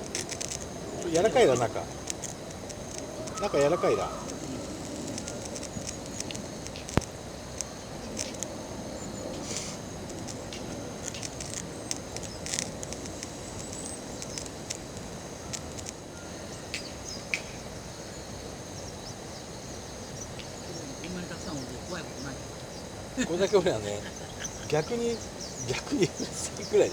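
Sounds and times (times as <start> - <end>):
sharp clicks and ticks: 0.0 - 8.6, 9.3 - 16.0
insects chirping: 0.0 - 26.9.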